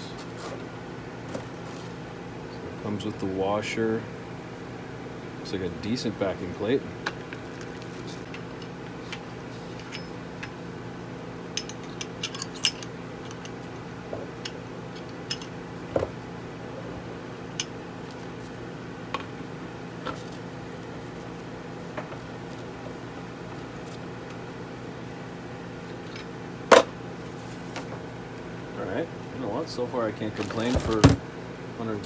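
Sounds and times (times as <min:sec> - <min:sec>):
steady background hum: 0:00.0 - 0:32.0.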